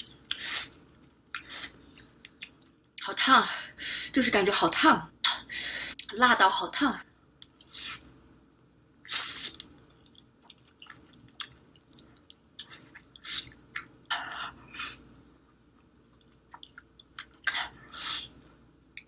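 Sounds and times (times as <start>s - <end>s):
short hissing bursts: 9.1s - 9.6s.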